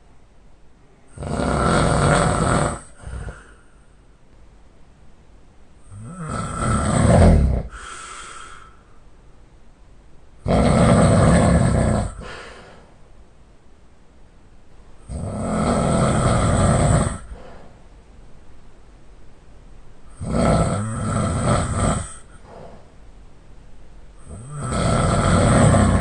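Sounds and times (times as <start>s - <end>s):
quiet breathing: 0.8s - 4.4s, 5.8s - 9.5s, 11.1s - 13.2s, 15.7s - 18.4s, 20.0s - 26.0s
man snoring: 1.1s - 3.6s, 5.9s - 8.7s, 10.4s - 12.6s, 15.1s - 17.7s, 20.1s - 22.8s, 24.2s - 26.0s.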